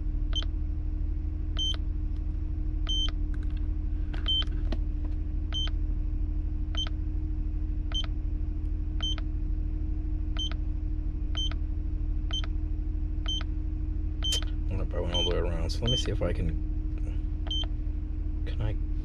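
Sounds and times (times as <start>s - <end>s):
car engine idling: 0.0s - 19.0s
vehicle warning chime beeping: 1.6s - 1.8s, 2.9s - 3.2s, 4.2s - 4.5s, 5.5s - 5.7s, 9.0s - 9.2s, 10.4s - 10.6s, 13.3s - 13.5s, 14.2s - 16.4s, 17.5s - 17.7s.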